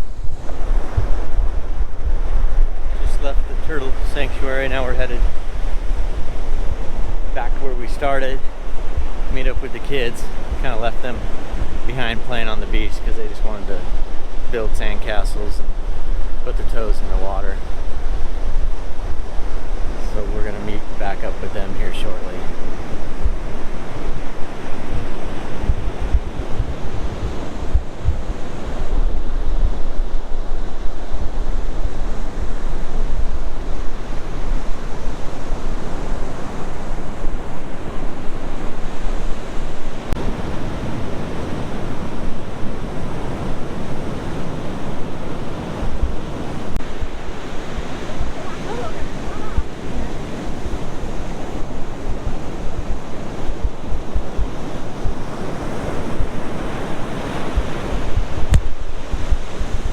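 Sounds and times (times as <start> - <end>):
ocean surf washing on beach: 0.0 - 59.9
wind buffeting microphone: 0.0 - 59.9.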